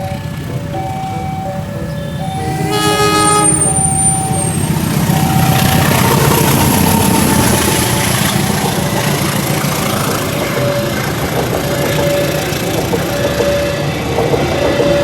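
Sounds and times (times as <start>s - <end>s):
heavy truck engine rumbling: 0.0s - 15.0s
vehicle horn toot: 2.3s - 4.6s.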